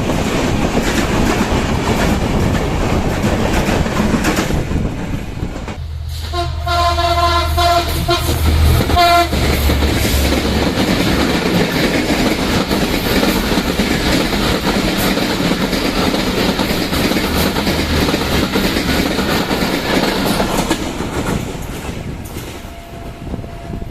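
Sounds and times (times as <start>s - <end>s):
diesel locomotive engine rumble: 0.0s - 23.9s
train wheels roaring past: 0.0s - 23.9s
train horn: 6.1s - 9.8s, 22.6s - 23.9s.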